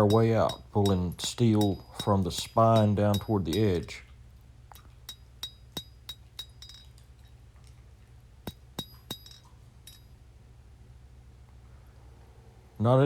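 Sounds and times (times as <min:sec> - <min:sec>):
hammer ringing on anvil: 0:00.0 - 0:04.0, 0:05.1 - 0:06.9, 0:08.5 - 0:10.1.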